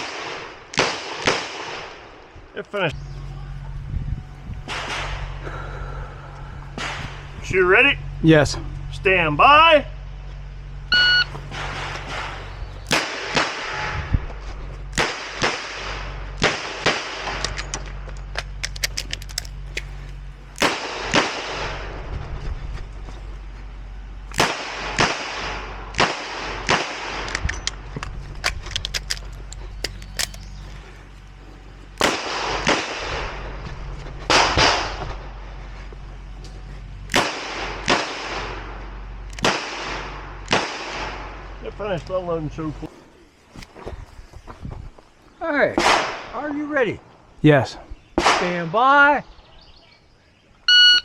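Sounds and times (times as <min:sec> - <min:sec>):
revolver shots with ringing echo: 0:11.4 - 0:14.1, 0:34.3 - 0:35.2, 0:37.1 - 0:41.6.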